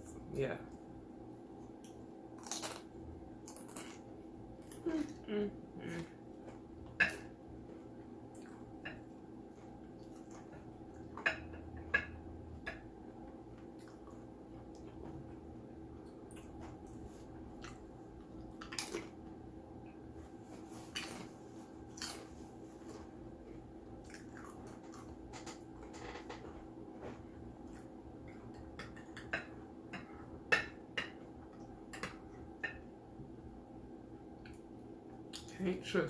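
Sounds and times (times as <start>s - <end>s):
faint steady hum: 0.0s - 36.0s
person chewing: 1.8s - 5.0s, 17.6s - 19.2s, 20.8s - 23.0s, 24.0s - 25.2s.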